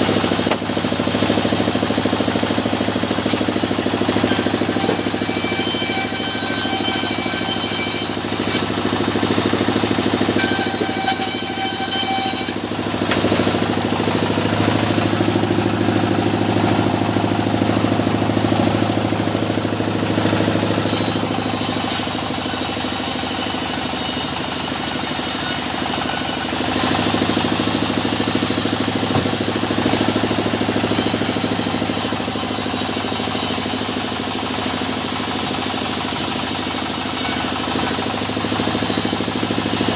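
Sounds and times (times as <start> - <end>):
saw whining through wood: 0.0 - 39.9.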